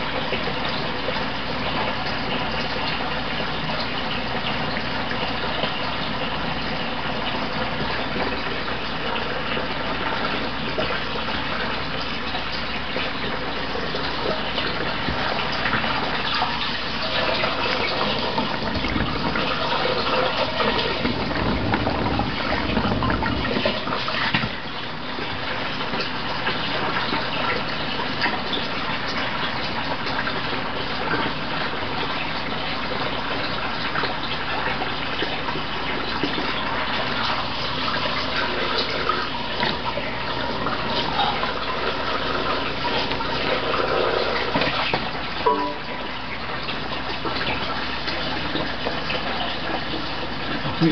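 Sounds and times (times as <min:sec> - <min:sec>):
water gushing and splashing: 0:00.0 - 0:50.9.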